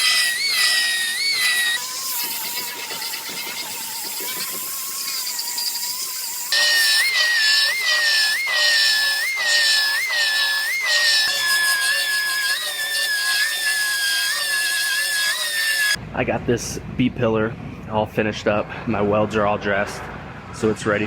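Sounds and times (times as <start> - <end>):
pneumatic grinder whining on metal: 0.0 - 16.0.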